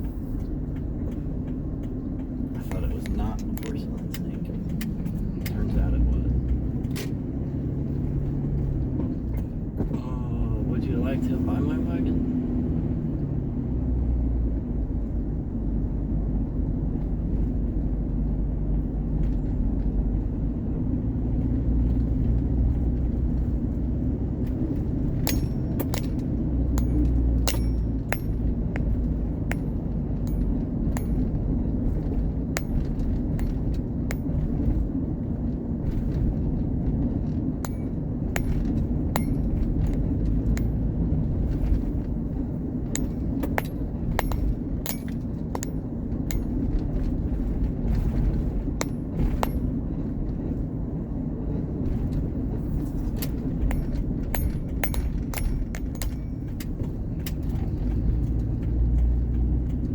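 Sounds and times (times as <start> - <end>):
car engine and road rumble: 0.0 - 59.9
sharp clinks and ticks: 25.2 - 31.6, 32.5 - 34.4, 37.6 - 41.0, 42.9 - 46.7, 48.8 - 49.8, 53.2 - 56.7.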